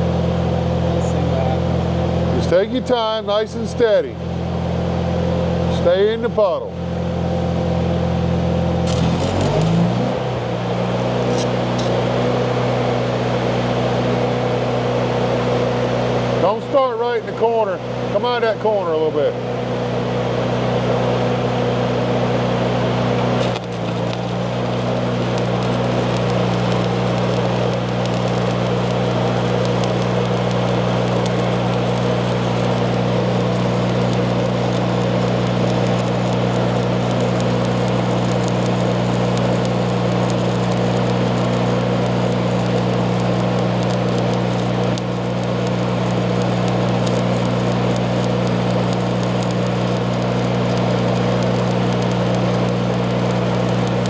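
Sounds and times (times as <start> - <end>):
welding arc crackling: 8.8 - 12.3, 23.4 - 54.0
low hum: 23.4 - 54.0.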